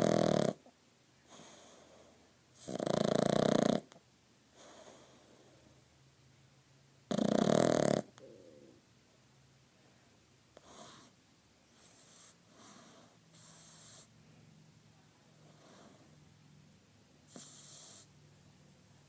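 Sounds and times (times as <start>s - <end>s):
dog snoring: 0.0s - 5.8s, 7.1s - 8.8s, 10.6s - 11.2s, 11.8s - 14.1s, 15.3s - 16.2s, 17.3s - 18.2s.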